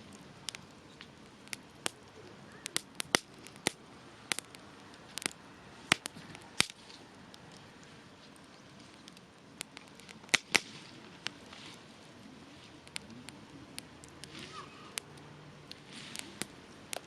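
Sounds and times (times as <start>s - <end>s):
campfire crackling and popping: 0.0s - 17.0s
flames hissing: 0.0s - 17.0s.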